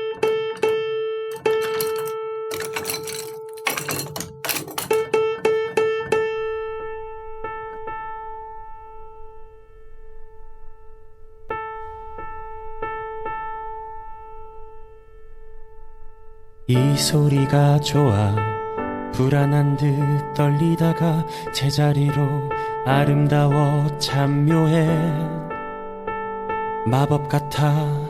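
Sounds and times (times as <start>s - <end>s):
piano key struck repeatedly: 0.0s - 6.3s.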